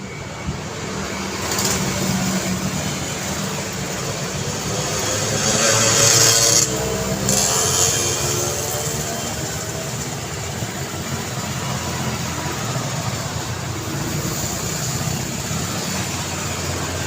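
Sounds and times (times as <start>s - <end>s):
road traffic: 0.0s - 17.0s
vehicle passing close by: 3.8s - 17.0s.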